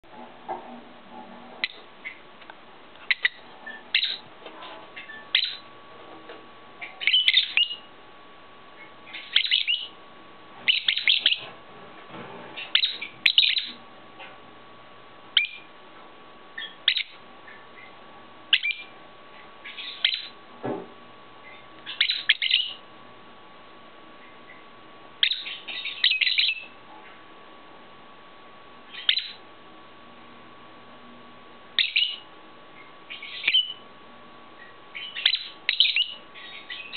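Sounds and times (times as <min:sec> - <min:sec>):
lovebirds chirping: 0:03.0 - 0:04.3, 0:05.0 - 0:05.7, 0:06.8 - 0:07.9, 0:08.8 - 0:10.0, 0:10.6 - 0:11.5, 0:12.6 - 0:13.8, 0:16.6 - 0:19.0, 0:19.6 - 0:20.4, 0:21.4 - 0:22.8, 0:24.2 - 0:26.8, 0:28.9 - 0:29.4, 0:31.8 - 0:33.8, 0:34.6 - 0:36.9.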